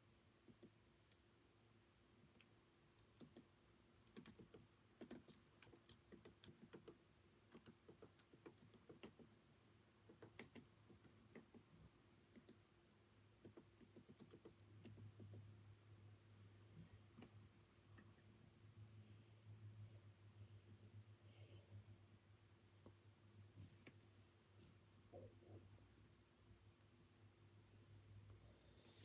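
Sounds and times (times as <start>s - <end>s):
faint steady hum: 0.0s - 29.0s
typing on computer keyboard: 3.0s - 3.5s, 4.1s - 9.3s, 10.1s - 11.6s, 12.3s - 12.6s, 13.4s - 15.4s.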